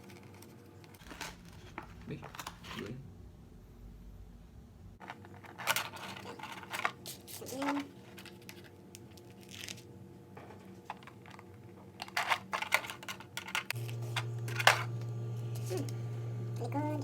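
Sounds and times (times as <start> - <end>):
steady low hum: 1.0 - 5.0, 13.7 - 17.0
plastic clicks and rustles: 10.4 - 14.9.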